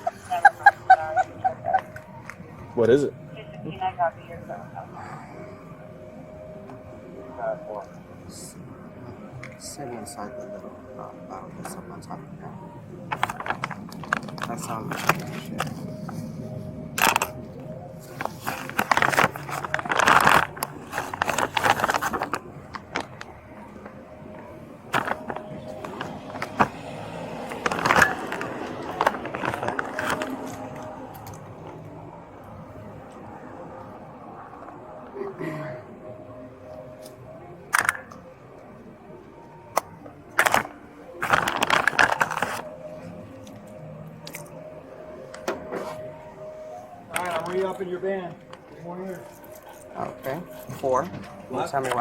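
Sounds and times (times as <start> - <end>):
rustling and scraping handling: 13.1 - 31.8, 40.4 - 43.7, 45.4 - 52.0.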